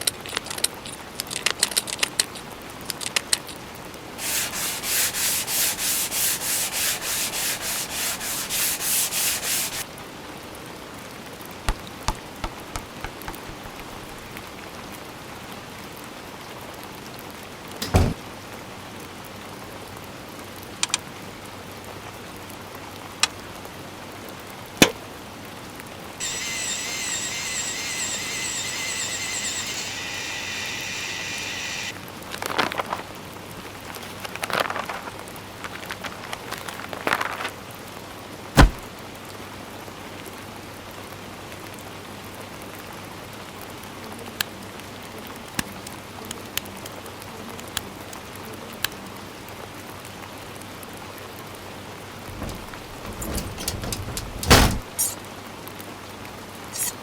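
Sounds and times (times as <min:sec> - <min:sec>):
loud rubbing strokes: 0:04.2 - 0:09.8, 0:26.2 - 0:31.9
wavering chirping tone: 0:26.2 - 0:31.9.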